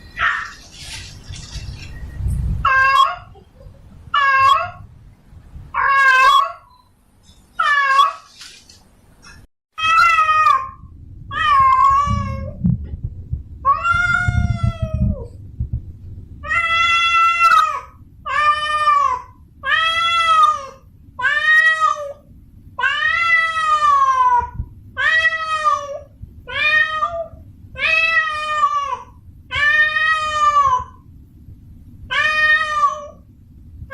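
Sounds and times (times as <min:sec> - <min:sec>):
cat yowling: 0:00.2 - 0:00.6, 0:02.6 - 0:03.3, 0:04.2 - 0:04.8, 0:05.8 - 0:06.7, 0:07.6 - 0:08.3, 0:09.8 - 0:12.6, 0:16.4 - 0:22.2, 0:22.8 - 0:31.0, 0:32.1 - 0:33.2.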